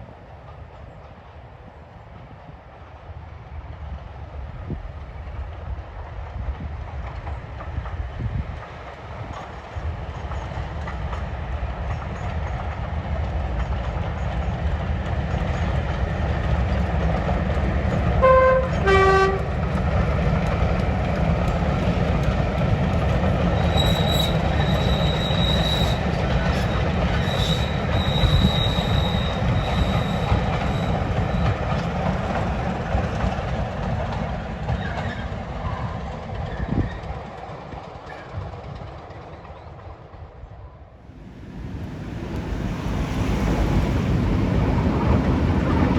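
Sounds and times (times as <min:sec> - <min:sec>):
diesel locomotive passing: 0:00.0 - 0:45.9
two-tone train horn: 0:18.2 - 0:19.6.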